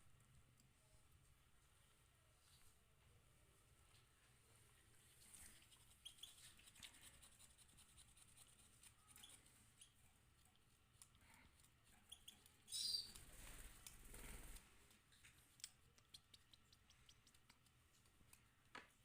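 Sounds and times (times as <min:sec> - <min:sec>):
high chirp: 0:12.1 - 0:13.2.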